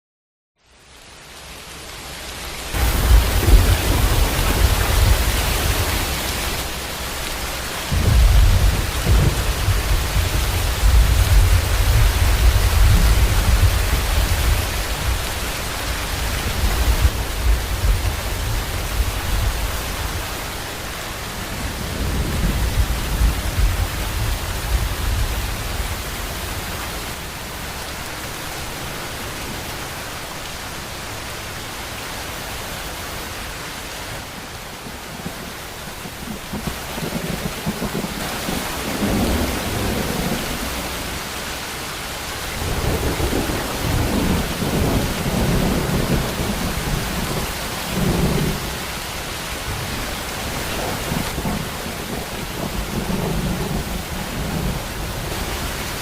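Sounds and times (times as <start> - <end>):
heavy rain: 0.6 - 56.0
rolling thunder: 2.8 - 6.3, 7.9 - 19.8, 21.4 - 26.0, 49.6 - 55.8.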